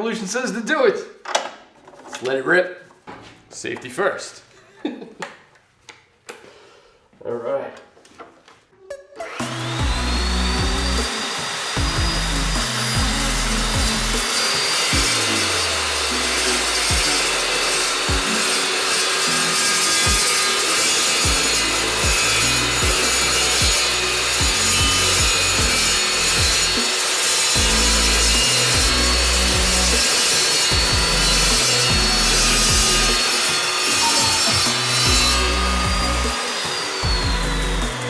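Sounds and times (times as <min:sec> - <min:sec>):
chop saw whining: 0:08.9 - 0:38.0
saw blade grinding through steel: 0:09.2 - 0:38.0.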